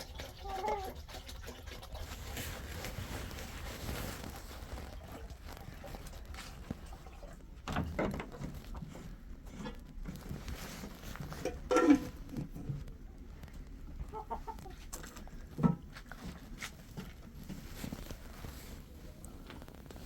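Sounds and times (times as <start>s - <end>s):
chicken clucking and squawking: 0.0s - 1.3s, 14.0s - 15.0s.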